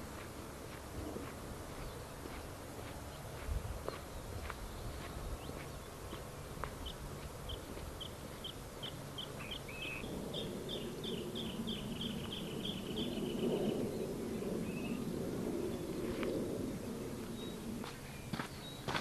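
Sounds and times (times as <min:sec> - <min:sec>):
low noisy rustle: 0:00.0 - 0:18.9
bird singing high trill: 0:06.8 - 0:15.0.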